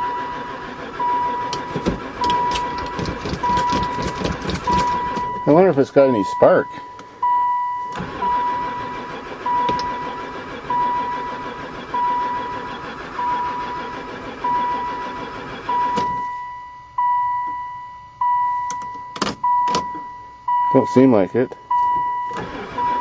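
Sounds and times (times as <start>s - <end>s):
starter cranking engine: 0.0s - 7.1s, 7.8s - 16.2s, 21.7s - 23.0s
repeating beep: 4.6s - 8.9s, 15.7s - 23.0s.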